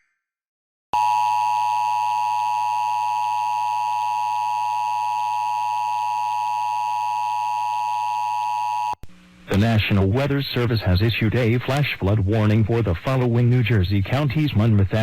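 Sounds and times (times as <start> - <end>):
two-tone alert alarm: 1.0 - 9.0.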